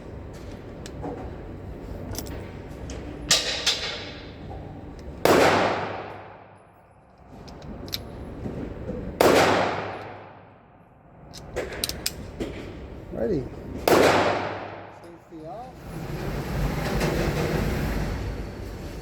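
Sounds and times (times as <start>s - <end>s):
gunshots with long echo: 5.2s - 6.6s, 9.2s - 10.6s, 13.8s - 15.0s.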